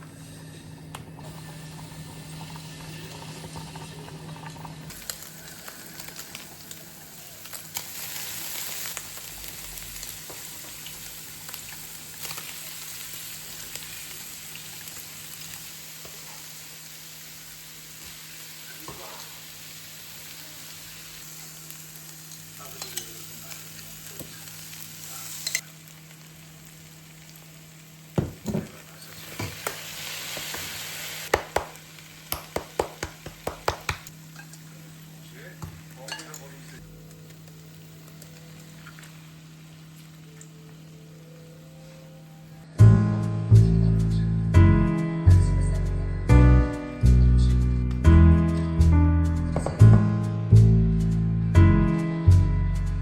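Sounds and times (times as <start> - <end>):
food sizzling in a frying pan: 0.0 - 42.6.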